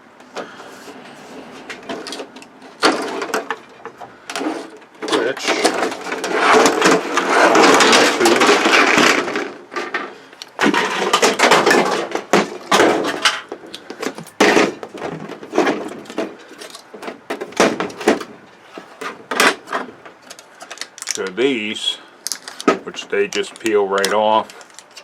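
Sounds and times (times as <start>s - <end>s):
plastic crackling and rustling: 0.7s - 25.0s
plastic clicks and knocks: 22.3s - 25.0s.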